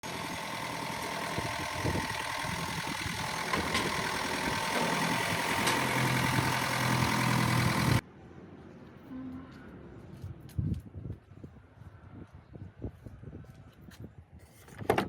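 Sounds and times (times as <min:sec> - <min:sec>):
vehicle engine idling: 0:00.0 - 0:08.0.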